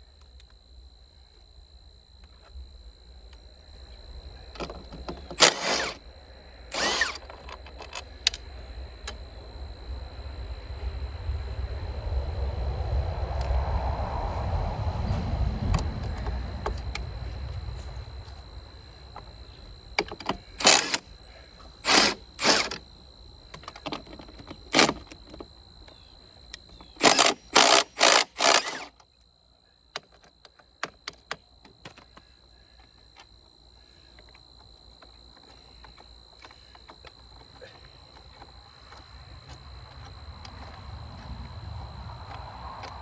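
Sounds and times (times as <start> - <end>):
pneumatic impact wrench bursts: 5.3 - 6.0, 6.7 - 7.8, 20.2 - 21.1, 21.8 - 22.8, 24.7 - 25.1, 27.0 - 28.9.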